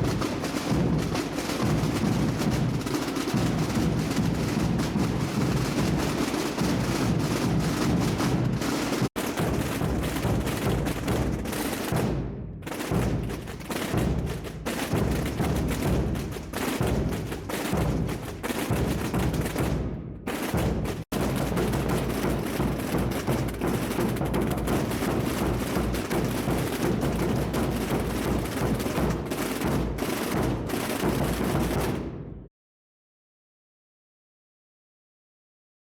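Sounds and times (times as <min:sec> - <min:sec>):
massed drums rolling: 0:00.0 - 0:12.2.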